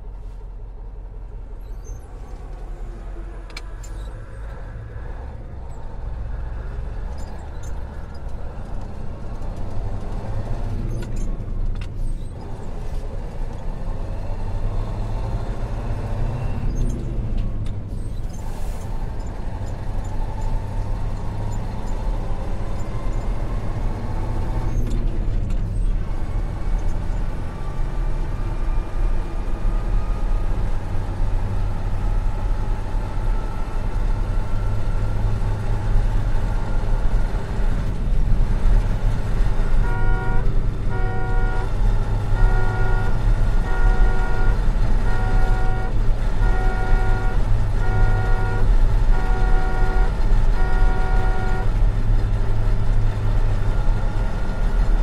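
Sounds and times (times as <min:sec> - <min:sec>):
truck horn blasts: 0:39.6 - 0:51.8.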